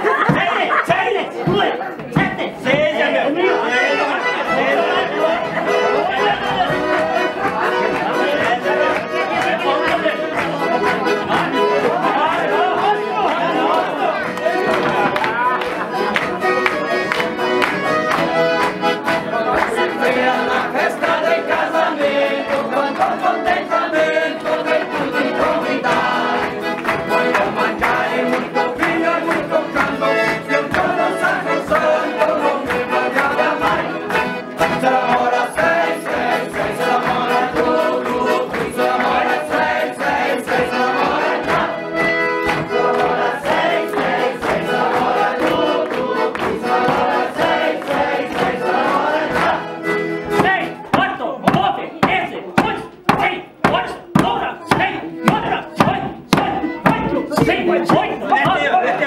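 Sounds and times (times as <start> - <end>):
accordion dance music: 0.0 - 59.0
group singing: 0.0 - 59.0.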